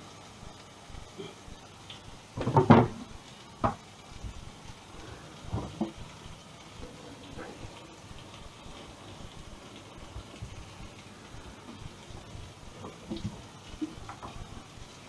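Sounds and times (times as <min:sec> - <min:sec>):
kitchen things knocking and clattering: 0:02.4 - 0:03.8, 0:05.5 - 0:06.0.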